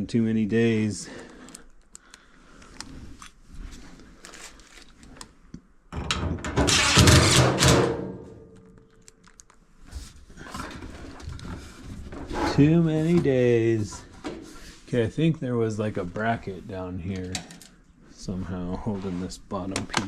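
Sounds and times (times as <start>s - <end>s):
faint clicks of parts: 1.2s - 5.7s, 8.5s - 11.6s, 17.1s - 17.9s
loud clattering scrape: 6.6s - 8.3s.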